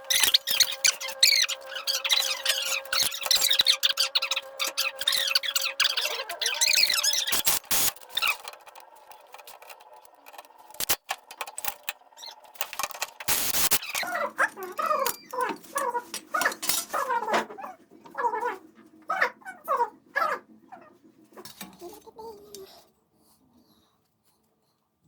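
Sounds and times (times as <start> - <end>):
dog whimpering: 0.1 - 7.5.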